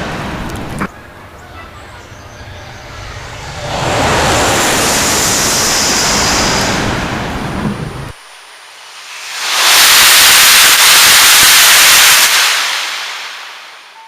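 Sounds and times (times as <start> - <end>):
high-speed train passing: 0.0 - 14.0.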